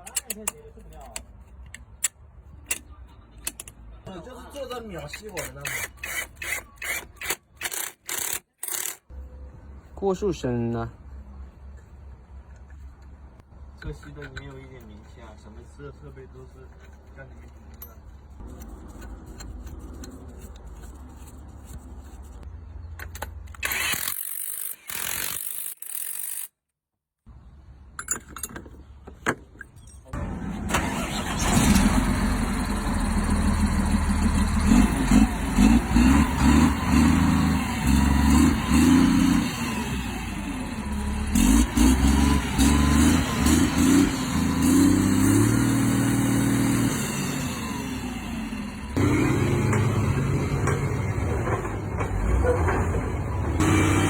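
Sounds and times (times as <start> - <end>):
vehicle engine revving: 30.2 - 54.0.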